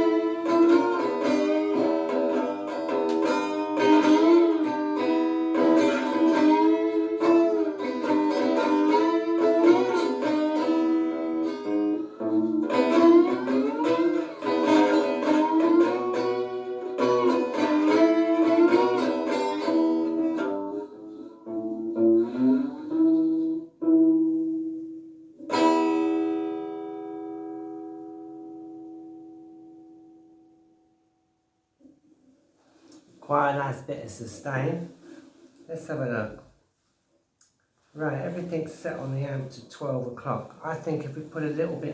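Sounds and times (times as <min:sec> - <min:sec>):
slide guitar playing: 0:00.0 - 0:31.0.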